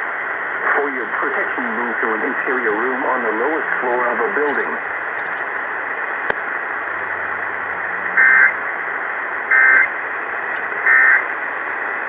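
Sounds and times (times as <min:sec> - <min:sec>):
radio static hiss: 0:00.0 - 0:12.0
sharp click: 0:04.5 - 0:05.6
warbling digital data bursts: 0:04.5 - 0:05.8, 0:08.2 - 0:12.0.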